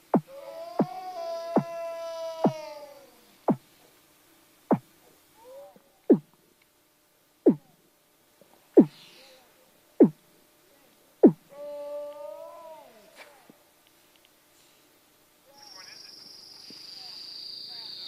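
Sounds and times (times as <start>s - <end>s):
seal sharp downward calls: 0.0s - 3.6s, 11.2s - 13.6s
seal moaning: 0.2s - 3.6s, 11.5s - 13.6s
faint warbling seal calls: 11.2s - 13.6s.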